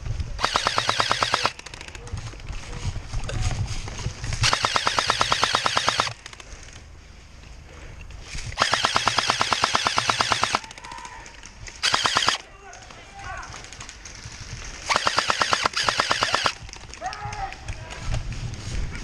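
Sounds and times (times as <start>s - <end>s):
airsoft gun firing full auto: 0.4s - 2.0s, 4.4s - 6.3s, 8.6s - 11.0s, 11.8s - 12.4s, 14.8s - 16.6s.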